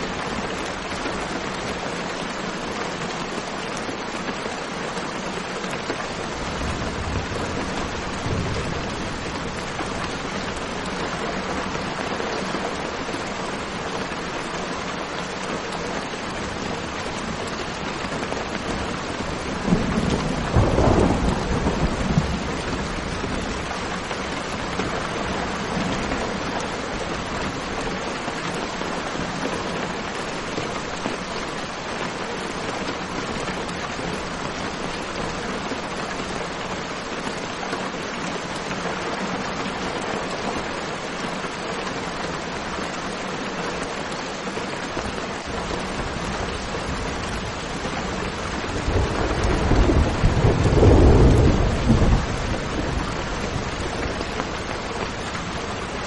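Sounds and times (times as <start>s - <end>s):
steady rain: 0.0s - 56.0s
thunder rumbling: 19.0s - 24.4s, 46.8s - 55.6s.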